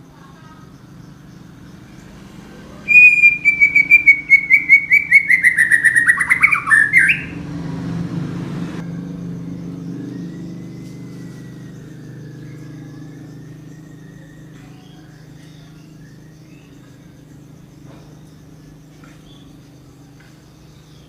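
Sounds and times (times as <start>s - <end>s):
birds chirping: 0.0s - 21.0s
low engine hum: 0.0s - 21.0s
thin wavering high whistle: 2.8s - 7.4s.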